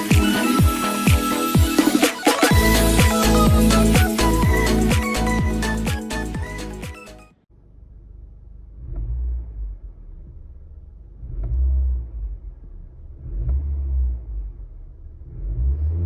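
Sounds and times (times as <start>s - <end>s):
car exhaust idling: 7.5s - 15.7s
engine revving: 8.7s - 16.0s.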